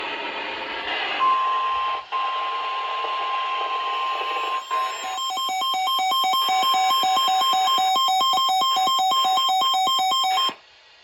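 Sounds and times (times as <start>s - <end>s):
alternating electronic beeps: 3.8s - 10.6s
steady high-pitched beep: 4.0s - 10.6s.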